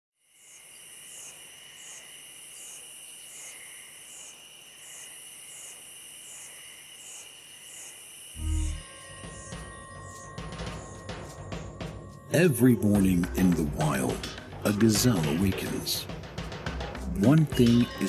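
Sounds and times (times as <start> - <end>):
insects chirring: 0.2 - 12.4.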